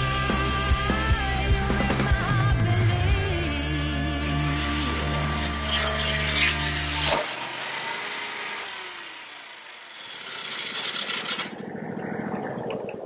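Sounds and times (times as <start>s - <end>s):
band sawmill cutting log: 3.5s - 11.6s.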